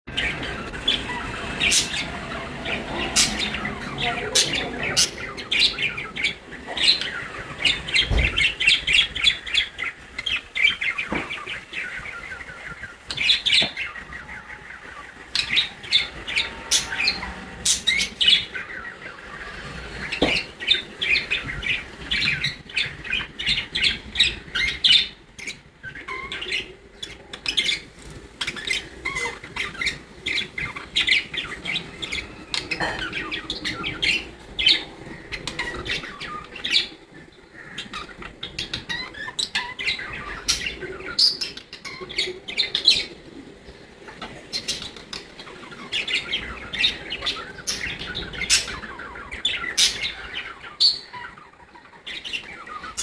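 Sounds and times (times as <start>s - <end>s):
budgerigar chattering: 0.1s - 14.5s, 15.4s - 19.0s, 28.4s - 43.1s, 44.2s - 53.0s.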